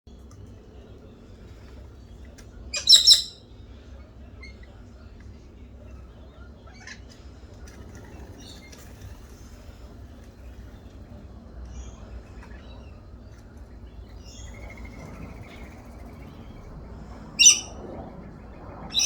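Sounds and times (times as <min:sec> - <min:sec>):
low steady rumble: 0:00.1 - 0:19.0
faint bird chirps: 0:02.7 - 0:03.5, 0:11.7 - 0:19.0
harsh bird squawk: 0:02.8 - 0:03.4, 0:17.4 - 0:17.8.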